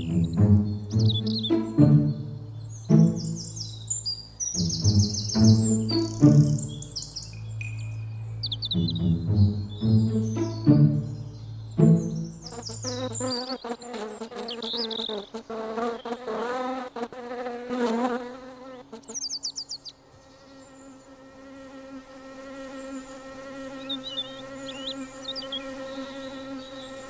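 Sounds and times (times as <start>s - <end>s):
cartoon bees buzzing: 12.4s - 19.2s, 20.7s - 27.0s.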